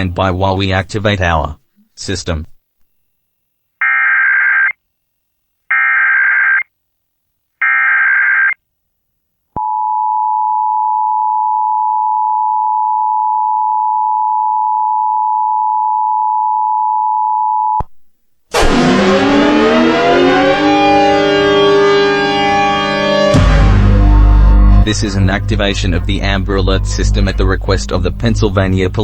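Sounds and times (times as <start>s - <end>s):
siren: 3.8s - 4.8s, 18.5s - 28.0s.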